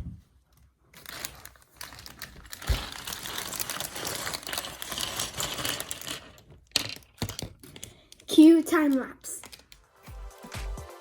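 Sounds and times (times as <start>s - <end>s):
packaging crinkling and rustling: 0.7s - 9.8s.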